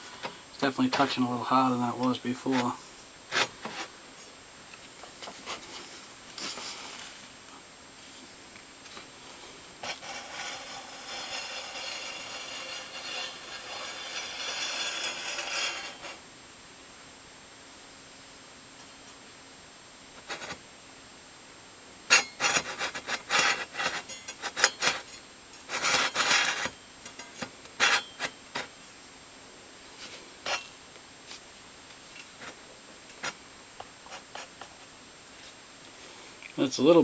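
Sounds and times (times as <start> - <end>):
metal scraping: 9.8 - 16.2, 22.1 - 28.7, 30.4 - 30.7.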